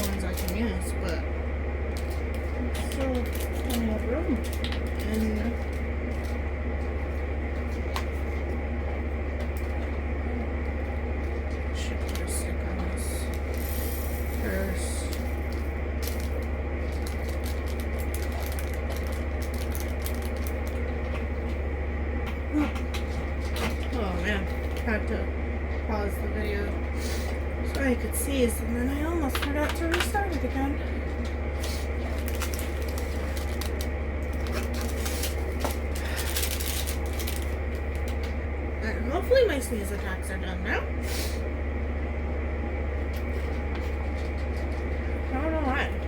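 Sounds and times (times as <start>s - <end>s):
steady low hum: 0.0s - 46.0s
plastic containers clicking and rattling: 32.0s - 38.3s.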